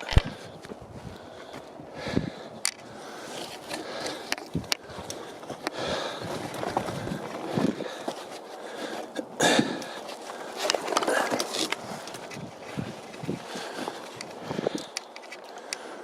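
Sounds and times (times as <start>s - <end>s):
wind buffeting microphone: 0.0s - 8.2s, 11.7s - 15.0s
footsteps on rocky trail: 0.0s - 16.0s
heavy breathing: 0.0s - 16.0s.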